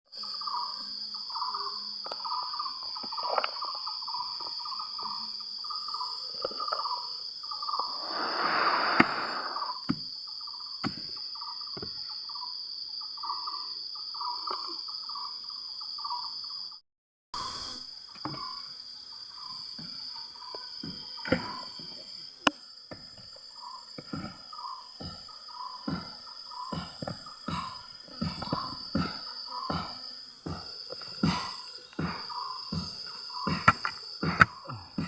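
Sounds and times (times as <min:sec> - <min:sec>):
insects buzzing: 0:00.1 - 0:16.8, 0:17.4 - 0:35.0
rush of noise: 0:08.0 - 0:09.7.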